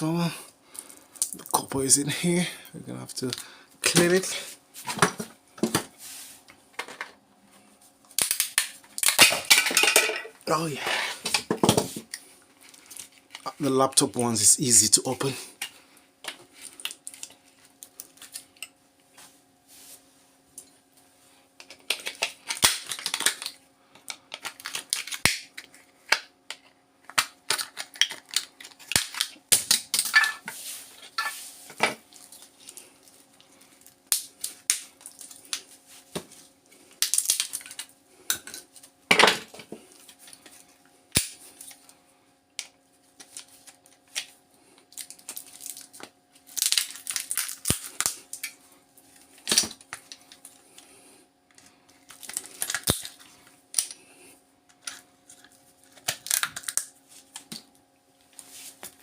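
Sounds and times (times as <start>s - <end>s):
faint steady hum: 0.0s - 59.0s
plastic casing cracking open: 8.1s - 9.5s, 21.6s - 26.3s, 27.1s - 30.2s, 37.0s - 38.6s, 44.9s - 48.6s, 49.4s - 50.5s, 52.0s - 54.0s, 54.8s - 57.7s
plastic and metal parts clattering: 9.0s - 12.1s.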